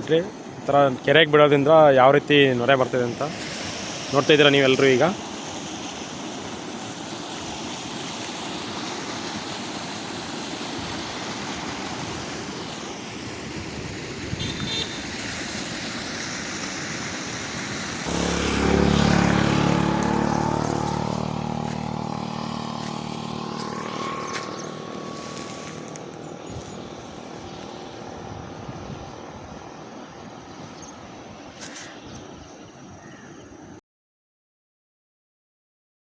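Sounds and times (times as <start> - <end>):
flowing foaming water: 0.0 - 32.2
motor engine humming: 18.0 - 29.4.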